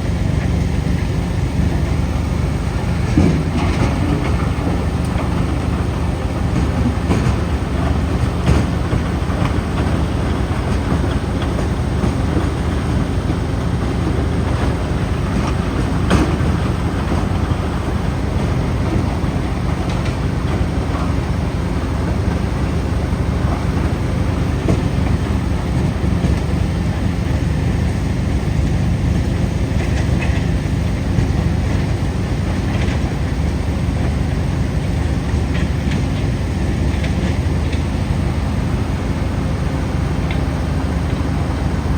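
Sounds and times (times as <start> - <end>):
crusher rumbling: 0.0 - 27.8.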